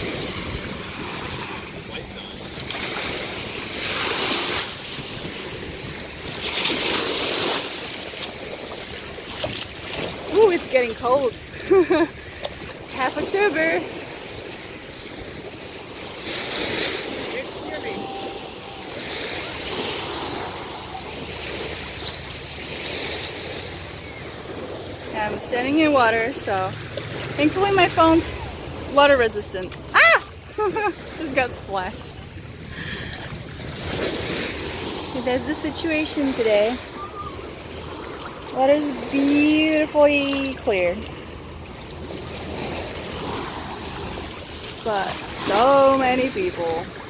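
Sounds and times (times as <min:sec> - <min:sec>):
small waves breaking on beach: 0:00.0 - 0:47.0.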